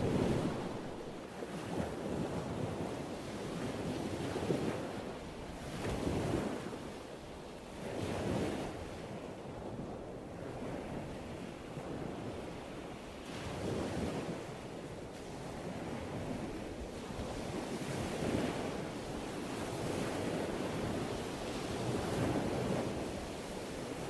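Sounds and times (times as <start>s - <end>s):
ocean waves breaking: 0.0s - 1.5s.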